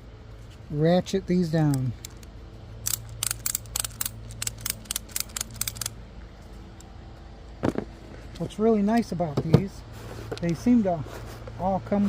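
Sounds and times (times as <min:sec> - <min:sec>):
ratchet strap clicking: 0:01.6 - 0:06.0.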